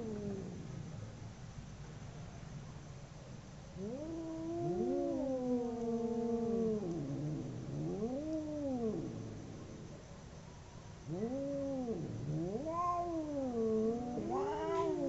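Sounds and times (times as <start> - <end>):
cats yowling: 3.8 - 9.2, 11.1 - 15.0.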